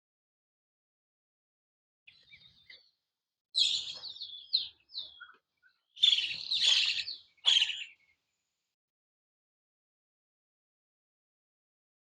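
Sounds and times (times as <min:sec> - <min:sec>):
bird chirping and warbling: 0:03.6 - 0:08.2.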